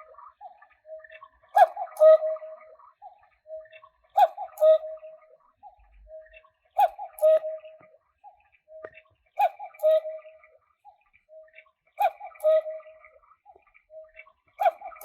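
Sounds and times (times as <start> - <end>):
cuckoo clock calling: 1.6 - 2.7, 4.2 - 6.0, 6.8 - 8.0, 9.4 - 10.4, 12.0 - 13.1.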